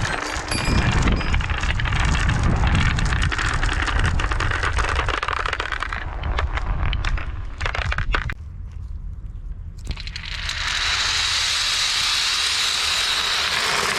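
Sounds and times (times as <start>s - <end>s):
xylophone notes: 0.0s - 1.4s
marbles clattering on wooden tracks: 0.0s - 8.4s, 9.9s - 13.9s.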